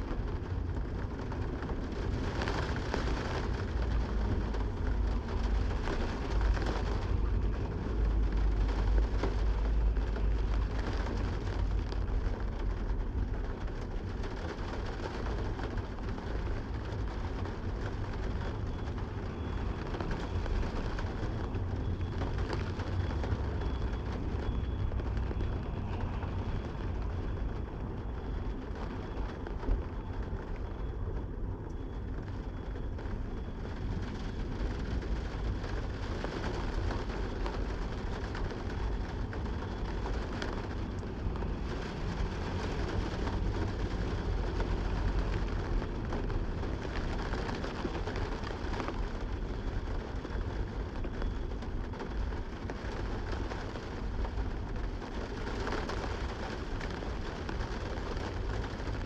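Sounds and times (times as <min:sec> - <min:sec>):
rain falling: 0:00.0 - 0:59.0.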